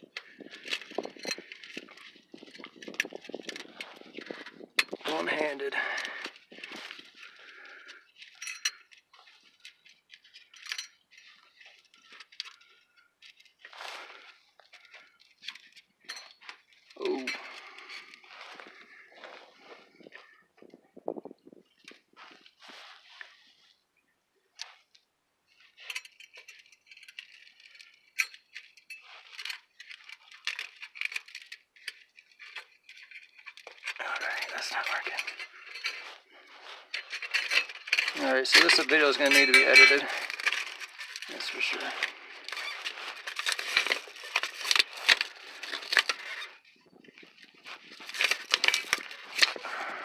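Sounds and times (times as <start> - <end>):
metal clamp clinking on pipe: 8.2 - 9.0, 15.5 - 16.6, 25.8 - 36.1, 36.9 - 46.5
metal scrape: 33.9 - 46.5.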